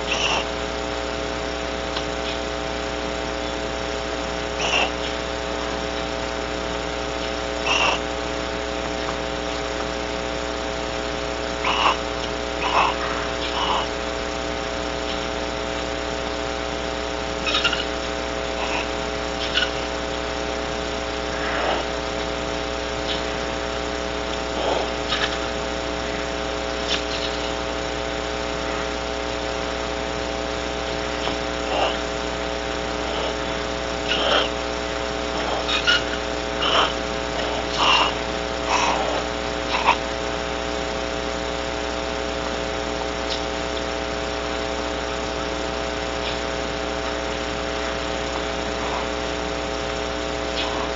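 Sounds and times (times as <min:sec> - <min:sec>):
bird calls: 0:00.0 - 0:00.5, 0:02.0 - 0:02.6, 0:04.5 - 0:06.2, 0:07.0 - 0:08.1, 0:11.6 - 0:14.0, 0:15.0 - 0:15.4, 0:17.4 - 0:20.1, 0:21.3 - 0:23.5, 0:24.6 - 0:27.7, 0:30.9 - 0:32.2, 0:33.0 - 0:40.0, 0:43.2 - 0:43.9, 0:46.1 - 0:46.5, 0:50.4 - 0:50.9
electrical hum: 0:00.0 - 0:50.9.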